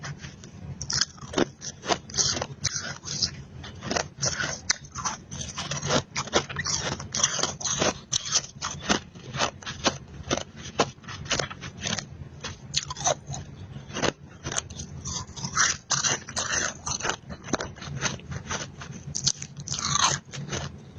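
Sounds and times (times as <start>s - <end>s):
chewing crunchy ice: 0.0s - 20.9s.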